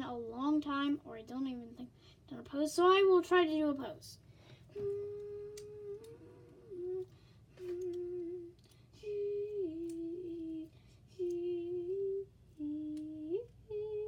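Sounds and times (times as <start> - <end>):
person humming a tune: 4.7 - 14.0.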